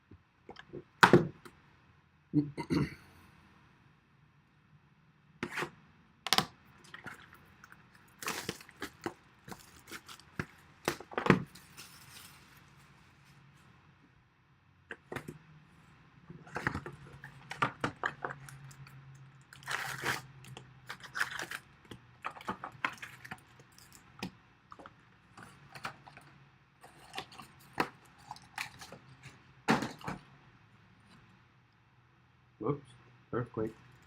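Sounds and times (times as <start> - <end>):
card wrappers crinkling and ripping: 6.3 - 12.9, 19.5 - 21.7, 26.9 - 29.2.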